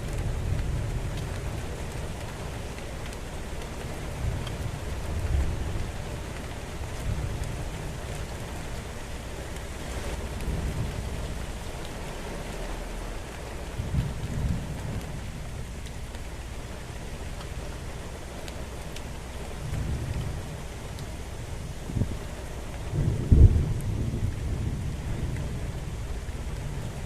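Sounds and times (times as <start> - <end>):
steady rain falling: 0.0 - 27.0
thunder rumbling: 9.8 - 16.3, 21.4 - 27.0.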